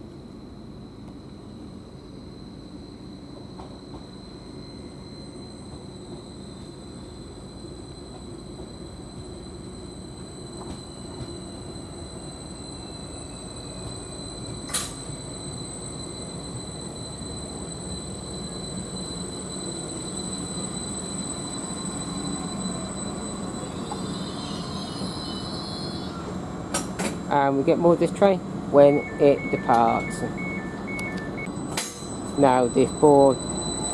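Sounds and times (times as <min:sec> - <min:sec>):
train diesel engine running: 0:00.0 - 0:33.9
high whine: 0:02.8 - 0:26.9, 0:28.7 - 0:33.9.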